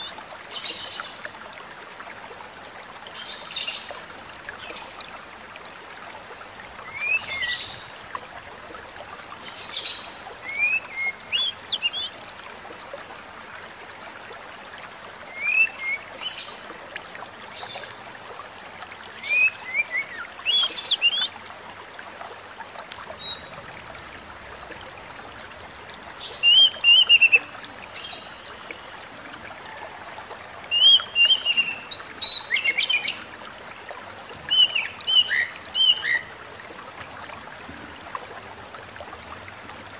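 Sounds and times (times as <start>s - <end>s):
bird singing whistled phrases: 10.5s - 12.1s, 15.4s - 16.0s, 26.4s - 27.5s, 30.7s - 33.1s, 34.5s - 36.3s.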